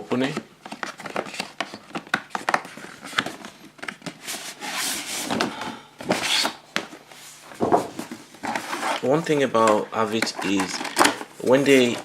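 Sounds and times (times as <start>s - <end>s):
cardboard sliding and scraping: 4.2s - 5.4s.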